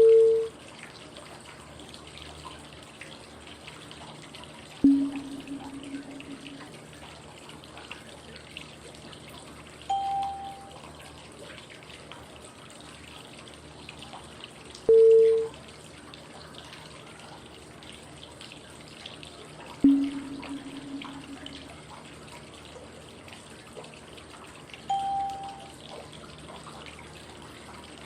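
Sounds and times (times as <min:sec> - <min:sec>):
short pitched cue tones: 0:04.8 - 0:06.8, 0:09.9 - 0:10.8, 0:14.9 - 0:15.5, 0:19.8 - 0:21.8, 0:24.9 - 0:25.8
flowing water white noise: 0:04.8 - 0:07.0, 0:09.8 - 0:11.0, 0:19.8 - 0:22.2, 0:24.8 - 0:26.0.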